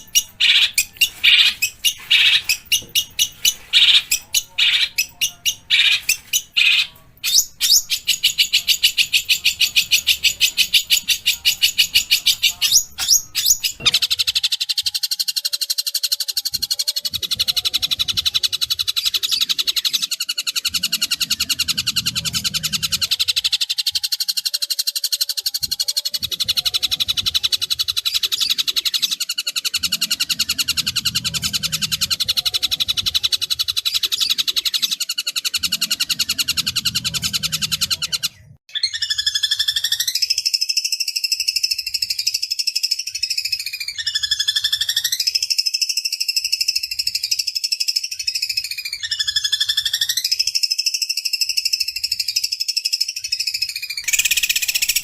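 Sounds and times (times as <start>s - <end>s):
long dipping bird calls: 0.0s - 13.9s
bird grating chatter: 0.0s - 14.1s, 54.0s - 55.0s.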